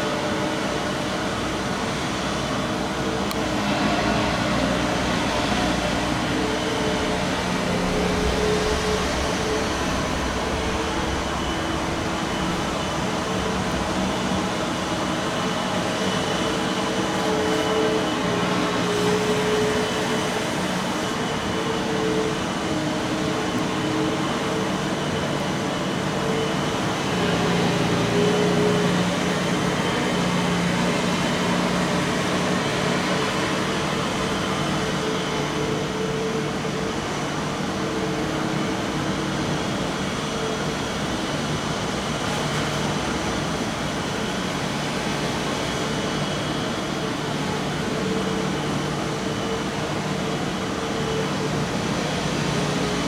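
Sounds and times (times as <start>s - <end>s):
mechanical drone: 2.6s - 42.3s.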